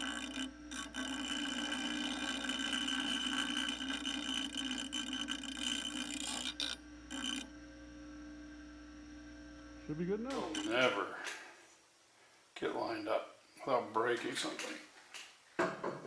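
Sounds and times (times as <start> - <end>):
grinder cutting steel: 0.0 - 7.5, 10.3 - 11.3.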